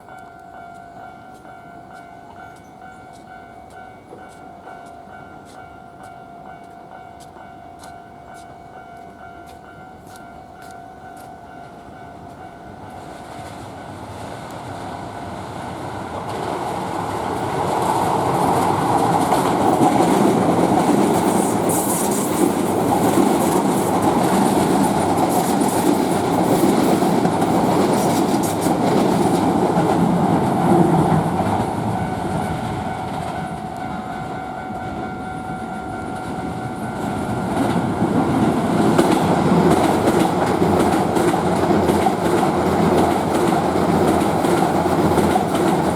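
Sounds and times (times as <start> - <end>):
crossing warning bell: 0.0 - 13.1, 16.6 - 45.9
train wheels clattering: 15.4 - 45.9.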